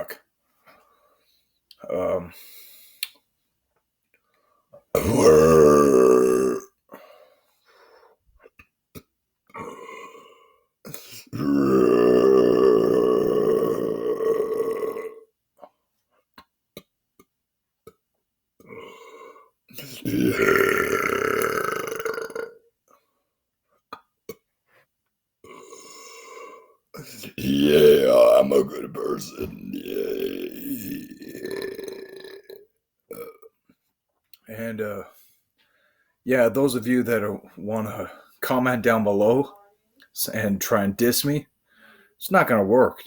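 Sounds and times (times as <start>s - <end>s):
man belching: 5.0s - 6.8s, 9.5s - 10.2s, 11.2s - 15.3s, 18.6s - 22.6s, 25.4s - 33.6s.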